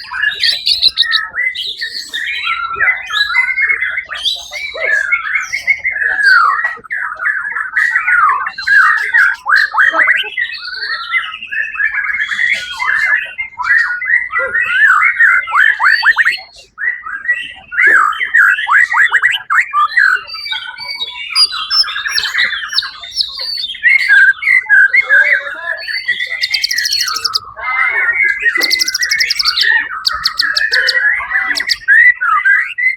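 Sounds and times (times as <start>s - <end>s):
bird singing rapid phrases: 0.0s - 32.9s
buzzy bird trill: 0.2s - 1.2s, 20.5s - 25.1s, 25.8s - 27.5s, 28.3s - 32.0s.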